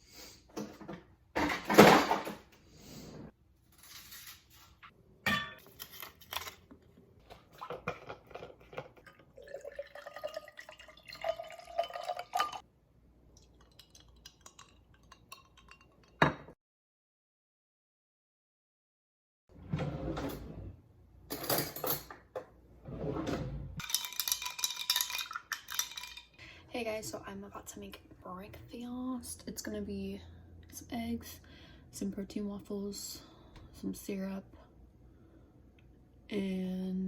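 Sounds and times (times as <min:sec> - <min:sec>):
dishes and cutlery clattering: 0:21.3 - 0:22.3.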